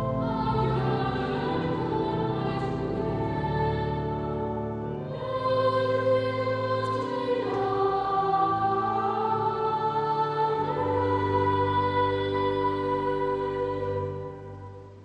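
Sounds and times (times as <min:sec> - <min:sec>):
choir singing held chords: 0:00.0 - 0:15.0.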